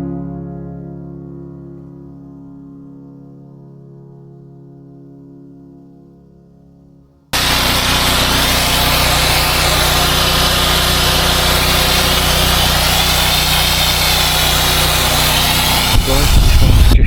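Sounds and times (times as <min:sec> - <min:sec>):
pressure washer engine hum: 0:07.4 - 0:17.0
water jet hissing: 0:07.4 - 0:17.0.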